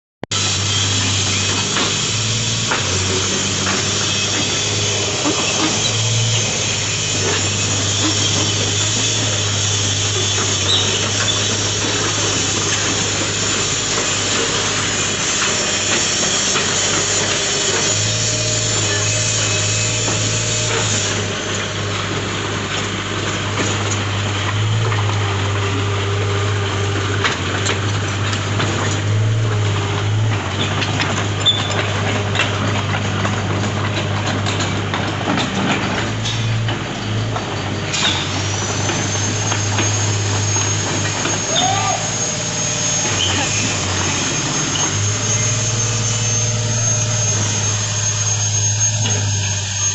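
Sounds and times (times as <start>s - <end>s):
excavator diesel engine running: 0.3s - 49.9s.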